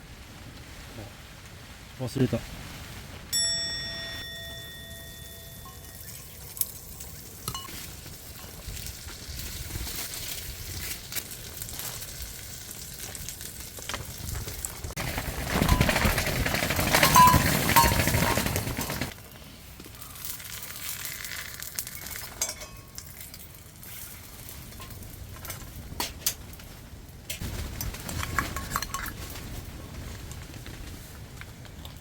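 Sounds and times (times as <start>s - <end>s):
utensils clinking on dishes: 22.2s - 23.1s.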